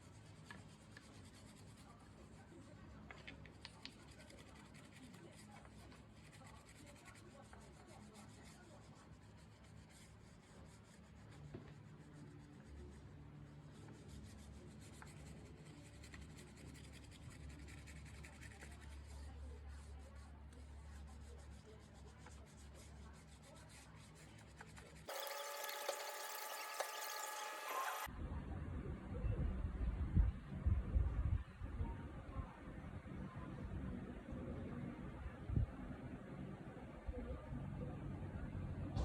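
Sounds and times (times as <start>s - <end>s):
carving machine humming: 25.1s - 28.1s
cutting bit scraping: 25.1s - 28.1s.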